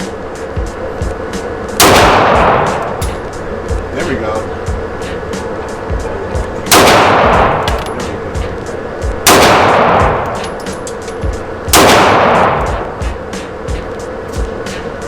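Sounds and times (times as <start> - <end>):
pistol shots ringing out: 1.8 - 3.5, 6.7 - 8.3, 9.3 - 12.7.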